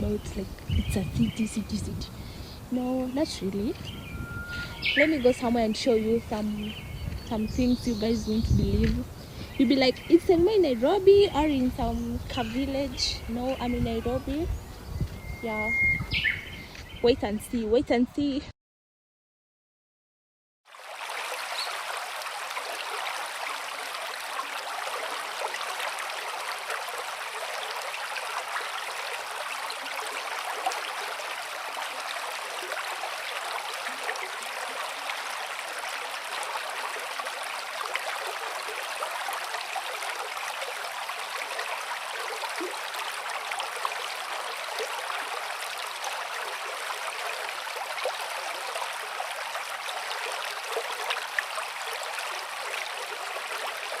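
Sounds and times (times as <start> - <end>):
river water rushing: 20.7 - 54.0.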